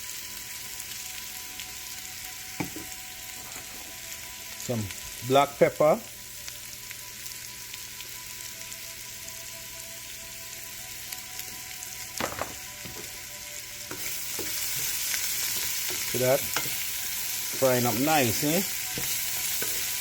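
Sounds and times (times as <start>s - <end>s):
seeds sizzling in hot oil: 0.0s - 20.0s.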